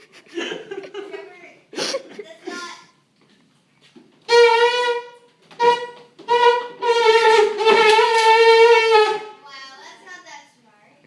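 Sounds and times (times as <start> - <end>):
elephant-like trumpeting: 4.3 - 9.4.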